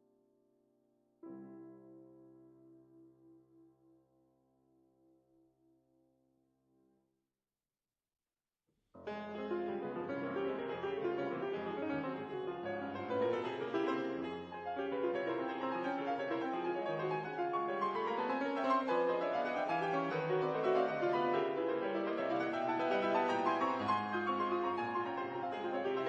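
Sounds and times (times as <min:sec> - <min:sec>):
piano background music: 0:01.2 - 0:04.2, 0:09.1 - 0:26.0.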